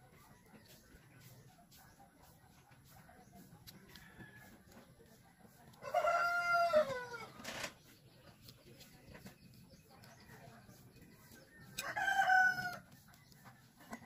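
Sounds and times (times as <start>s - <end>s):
rooster crowing: 5.8s - 7.2s, 11.8s - 12.8s.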